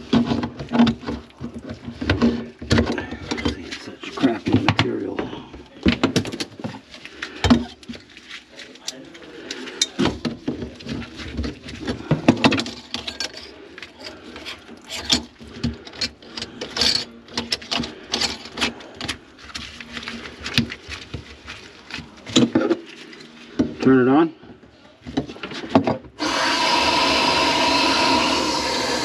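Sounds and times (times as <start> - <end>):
pipe parts clicking and rattling: 5.8 - 23.8.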